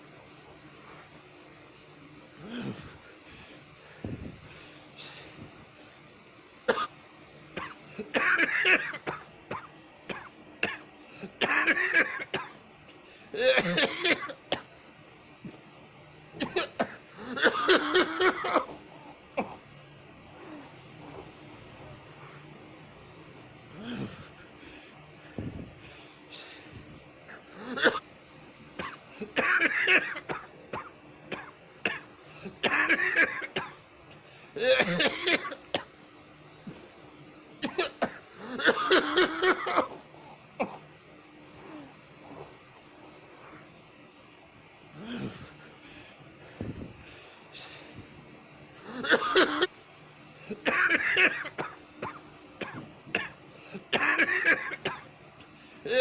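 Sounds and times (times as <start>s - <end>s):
person coughing: 2.4s - 3.0s, 7.6s - 12.6s, 13.4s - 14.7s, 16.4s - 19.7s, 23.8s - 24.4s, 27.3s - 28.0s, 28.8s - 33.8s, 34.6s - 35.9s, 37.6s - 40.9s, 48.8s - 49.7s, 50.4s - 55.1s.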